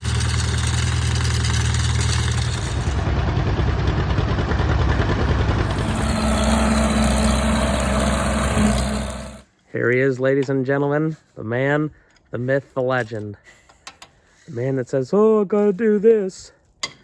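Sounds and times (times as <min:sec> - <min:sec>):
engine running: 0:00.0 - 0:09.5.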